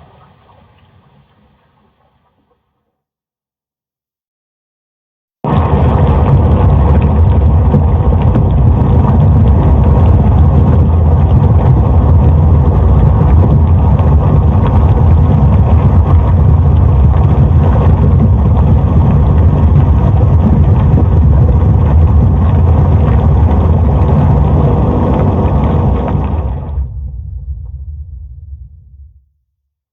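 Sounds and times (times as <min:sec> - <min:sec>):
deep volcanic rumble: 0:05.4 - 0:29.3.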